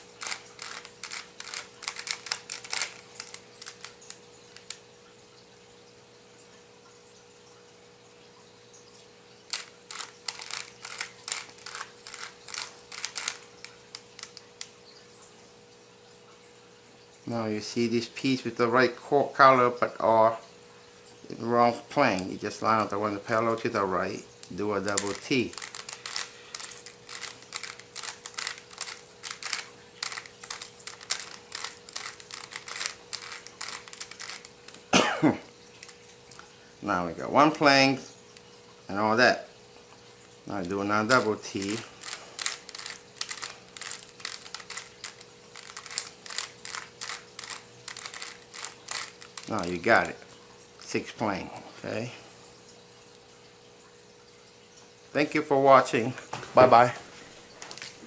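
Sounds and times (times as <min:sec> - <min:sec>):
puzzle cube clicking: 0:00.0 - 0:04.8, 0:09.5 - 0:14.7, 0:24.4 - 0:34.9, 0:40.6 - 0:50.2
faint steady hum: 0:00.0 - 0:58.0.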